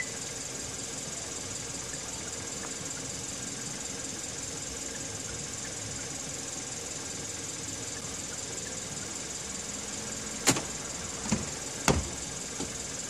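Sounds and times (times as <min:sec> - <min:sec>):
car engine humming: 0:09.6 - 0:13.0.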